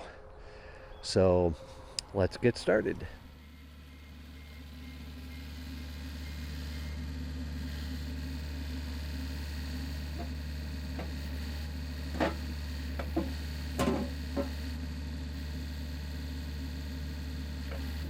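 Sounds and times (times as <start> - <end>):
excavator diesel engine humming: 1.4 - 18.0
sharp clicks and knocks: 12.1 - 14.6.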